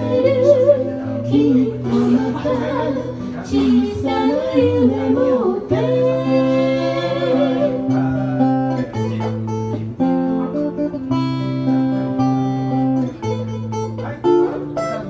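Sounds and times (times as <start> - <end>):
acoustic guitar chords: 0.0 - 15.0.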